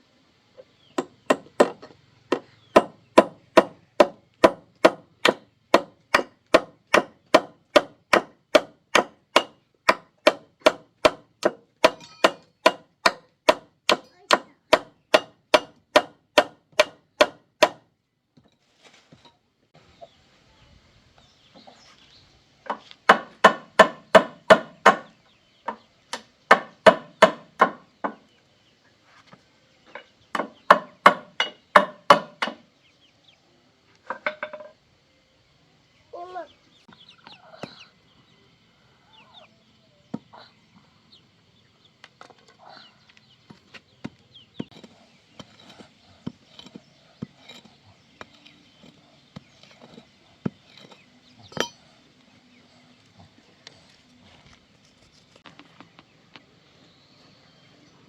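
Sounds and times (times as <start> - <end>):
hand tool striking wood: 1.0 - 17.8, 22.7 - 25.1, 25.7 - 28.2, 29.9 - 32.6, 43.5 - 51.8.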